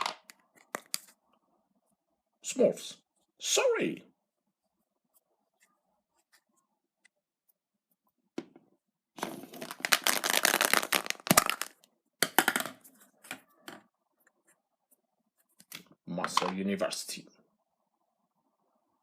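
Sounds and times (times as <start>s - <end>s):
foil wrapper tearing and crinkling: 9.2s - 11.8s.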